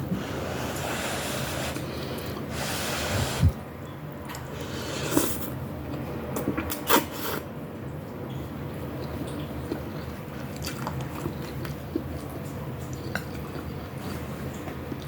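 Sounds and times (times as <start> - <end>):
noisy intake of air: 0.0 - 3.6
eating sounds: 9.0 - 15.0.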